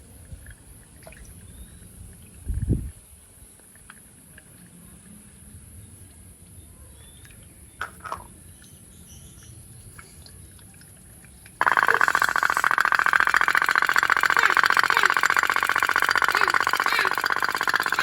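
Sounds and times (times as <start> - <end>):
toy boat putt-putt rattle: 7.8 - 8.4, 11.4 - 18.0.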